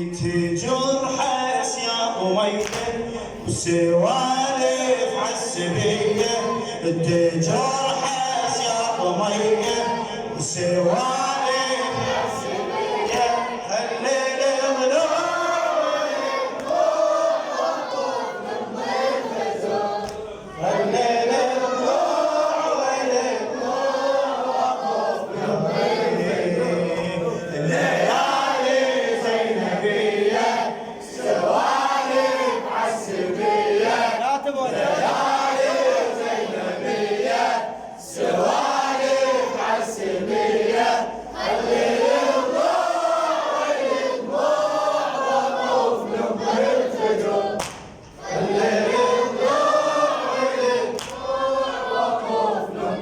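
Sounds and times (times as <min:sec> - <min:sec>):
chorus singing unaccompanied: 0:00.0 - 0:53.0.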